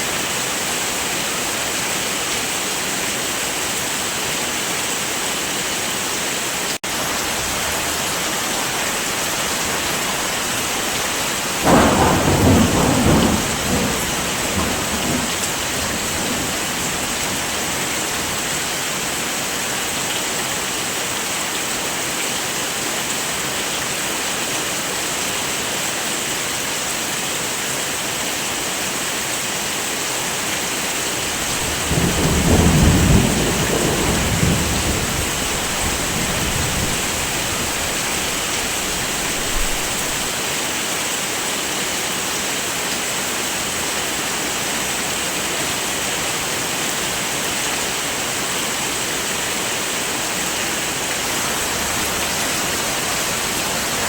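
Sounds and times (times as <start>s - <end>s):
heavy rain: 0.0s - 54.0s
thunderclap rumbling: 11.3s - 18.1s, 31.2s - 40.3s.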